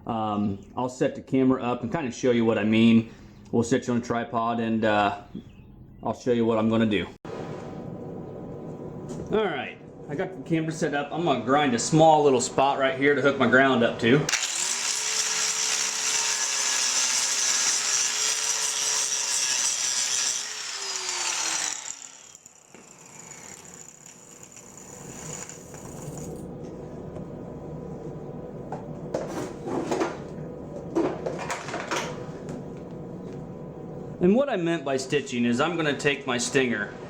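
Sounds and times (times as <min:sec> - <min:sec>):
angle grinder grinding steel: 0:14.3 - 0:26.4.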